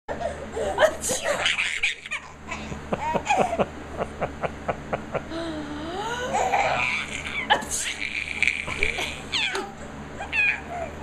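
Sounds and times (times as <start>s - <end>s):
baby laughing: 0.2s - 3.7s, 6.1s - 11.0s.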